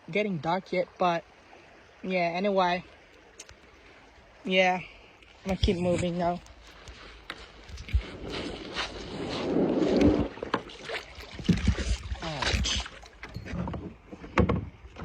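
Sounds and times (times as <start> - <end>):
knocks and creaks on hull: 5.2 - 15.0
kayak hull scraping: 5.3 - 15.0.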